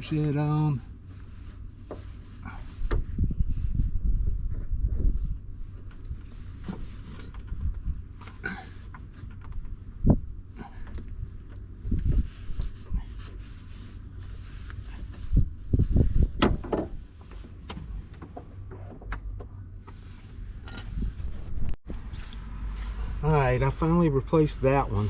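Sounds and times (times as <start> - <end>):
knocks and clunks of gas strut: 2.8 - 3.4, 5.8 - 12.8, 14.7 - 20.0.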